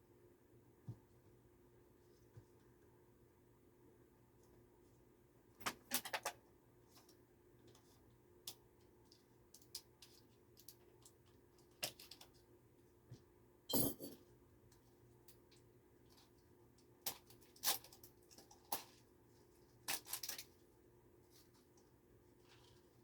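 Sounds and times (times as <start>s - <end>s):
small objects clicking and clattering: 17.0s - 19.0s, 19.8s - 20.5s.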